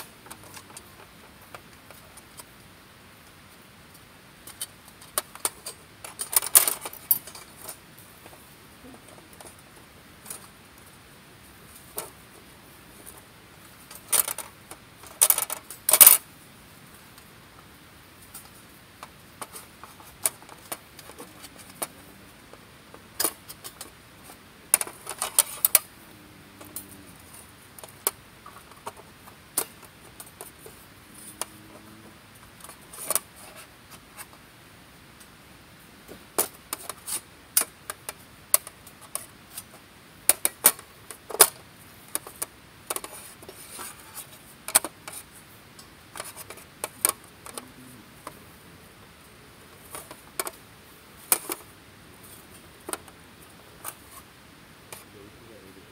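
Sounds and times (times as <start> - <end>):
metal camp gear clinking: 4.4 - 7.8, 19.4 - 25.9.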